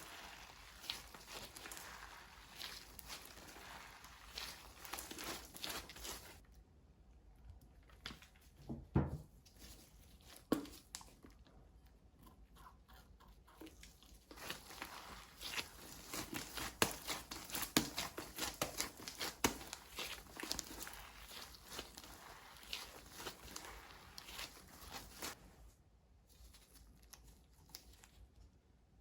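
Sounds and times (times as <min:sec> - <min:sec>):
hands squeezing sticky slime: 0:00.0 - 0:06.4, 0:10.1 - 0:25.4.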